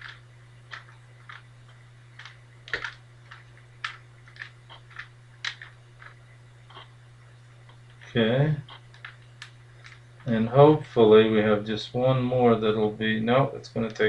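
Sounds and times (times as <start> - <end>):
steady low hum: 0.0 - 14.0
puzzle cube clicking as twisted: 2.2 - 6.2.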